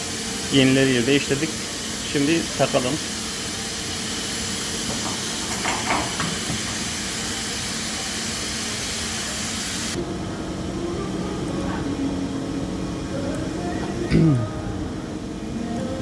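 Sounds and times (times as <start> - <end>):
compressed air hissing: 0.0 - 10.0
low machine hum: 0.0 - 16.0.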